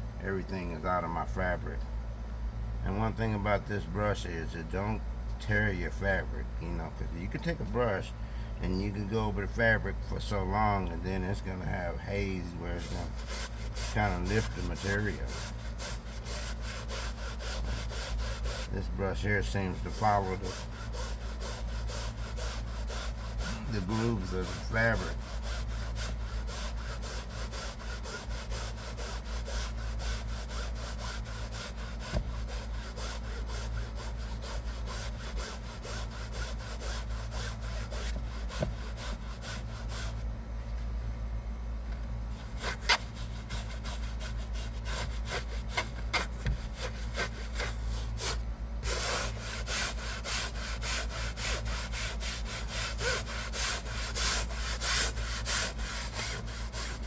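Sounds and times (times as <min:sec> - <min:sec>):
steady low hum: 0:00.0 - 0:57.0
brush scrubbing fabric seat: 0:12.7 - 0:40.2, 0:42.4 - 0:57.0.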